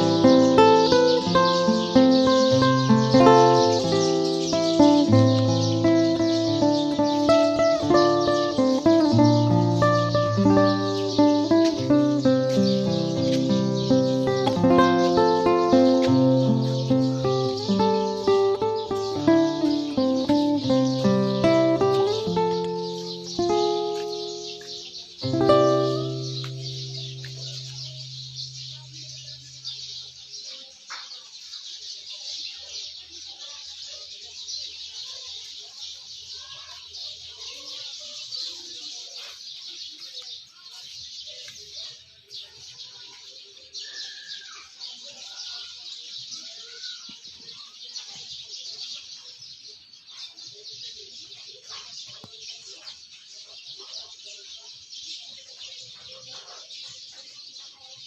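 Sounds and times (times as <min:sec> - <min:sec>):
music: 0:00.0 - 0:29.3
birds chirping and calling: 0:00.0 - 0:58.0.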